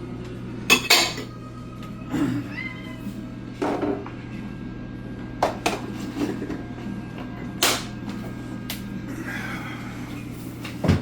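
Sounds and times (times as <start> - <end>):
kitchen knocks and clunks: 0.7 - 1.3, 10.8 - 11.0.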